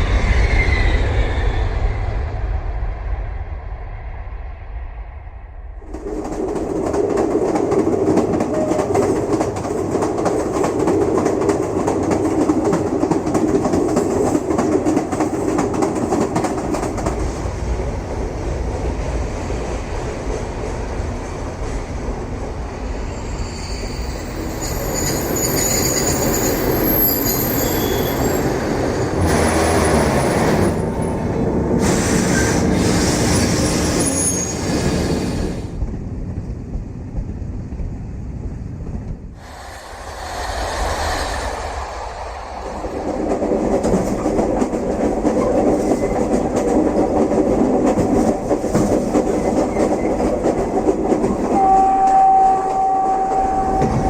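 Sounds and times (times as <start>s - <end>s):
train rolling rumble: 0.0s - 54.0s
metallic wheel squeals: 23.1s - 31.1s, 32.2s - 35.1s.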